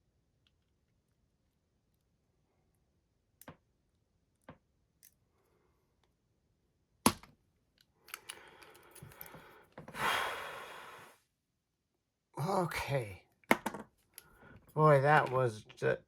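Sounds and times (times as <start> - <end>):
lock picking tools clicking: 7.1 - 9.4
padlock shackle snapping open: 7.1 - 9.4
lock and tools rustling: 8.0 - 9.6.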